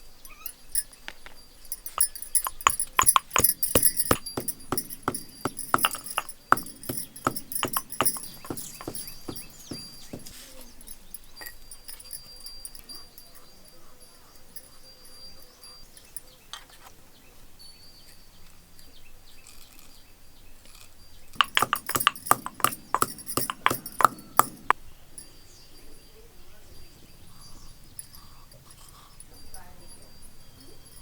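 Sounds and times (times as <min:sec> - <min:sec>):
rapid sharp knocks: 0:02.0 - 0:10.4, 0:21.4 - 0:24.7.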